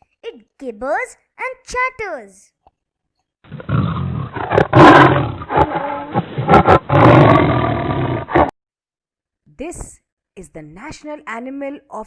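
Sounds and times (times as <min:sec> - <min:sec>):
harsh wild animal calls: 0:03.5 - 0:08.5.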